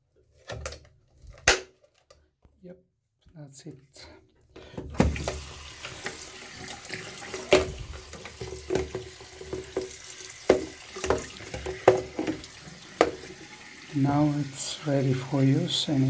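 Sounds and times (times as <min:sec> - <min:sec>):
water boiling and gurgling: 0:05.0 - 0:16.0.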